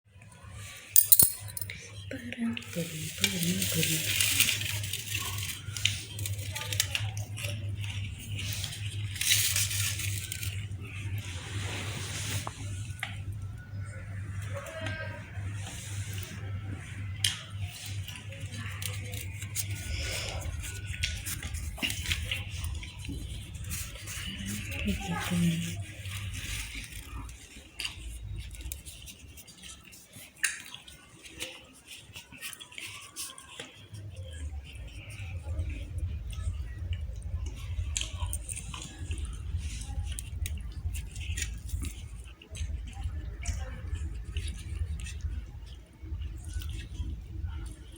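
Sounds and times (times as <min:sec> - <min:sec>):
cutlery clinking on plate: 0:01.0 - 0:01.7
wet chewing and tearing: 0:02.9 - 0:14.5, 0:15.6 - 0:47.9
steady low hum: 0:03.0 - 0:29.3, 0:33.9 - 0:47.9.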